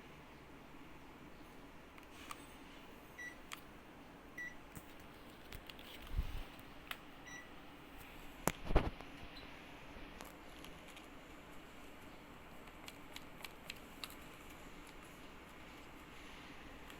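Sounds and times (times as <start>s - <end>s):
air conditioner beeps: 2.0s - 4.7s, 6.4s - 7.8s, 9.2s - 9.6s.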